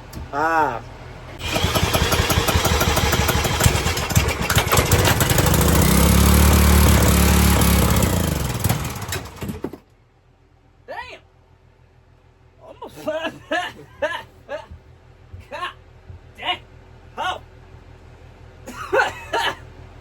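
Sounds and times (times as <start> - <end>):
engine sputtering and running: 1.3 - 9.8
drill spinning engine: 1.4 - 9.6.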